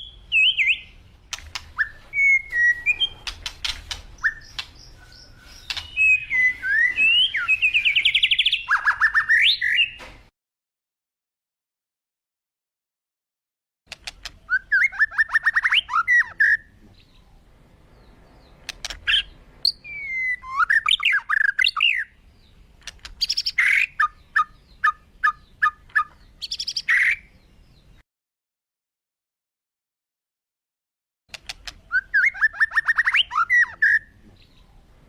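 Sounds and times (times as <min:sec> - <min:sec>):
birds chirping and whistling: 0:00.0 - 0:10.0, 0:14.0 - 0:28.0, 0:31.3 - 0:35.0
loud sharp bird calls: 0:00.0 - 0:10.0, 0:13.9 - 0:28.0, 0:31.3 - 0:35.0.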